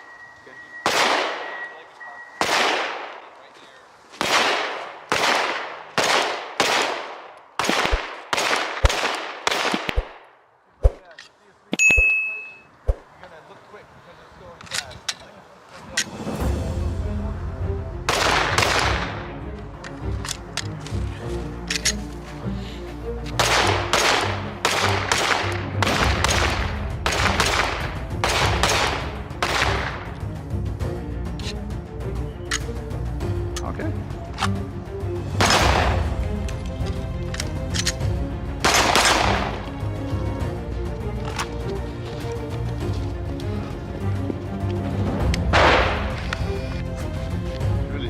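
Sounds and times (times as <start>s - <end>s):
pistol shots: 0.8s - 1.7s, 2.4s - 3.3s, 4.1s - 10.3s, 18.1s - 19.2s, 23.4s - 30.1s, 35.4s - 36.1s, 38.6s - 39.6s, 45.5s - 46.1s
background music: 15.9s - 48.0s.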